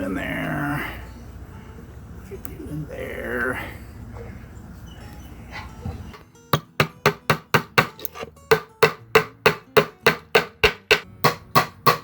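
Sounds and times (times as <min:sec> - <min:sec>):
hammer striking: 0:06.5 - 0:12.0.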